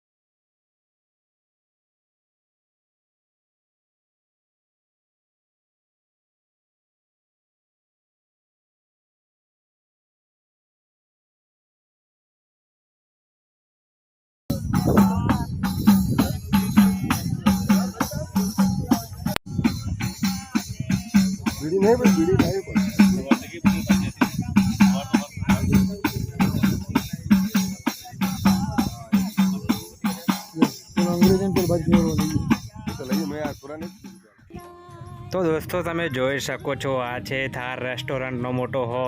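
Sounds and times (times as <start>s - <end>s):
person singing: 14.5s - 33.2s, 34.1s - 38.4s
music with steady drum beat: 14.5s - 36.4s
jingling percussion: 14.5s - 36.6s.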